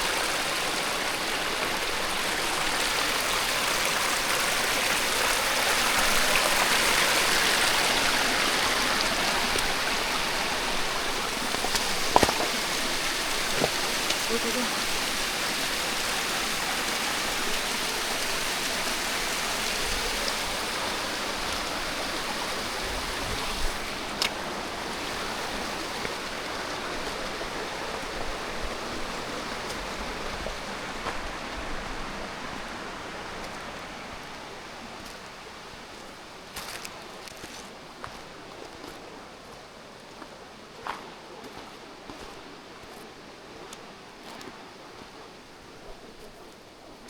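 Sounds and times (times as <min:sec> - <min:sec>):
running stream: 0:00.0 - 0:47.0.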